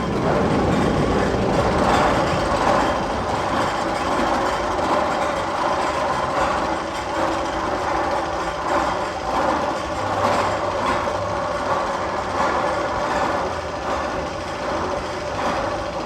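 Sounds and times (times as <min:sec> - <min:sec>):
rolling rumble: 0:00.0 - 0:08.1.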